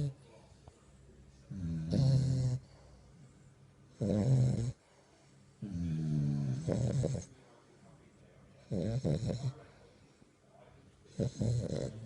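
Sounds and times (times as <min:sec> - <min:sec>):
puppy snoring: 0:01.5 - 0:02.8, 0:03.9 - 0:04.8, 0:05.6 - 0:07.3, 0:08.6 - 0:09.6, 0:11.1 - 0:12.0.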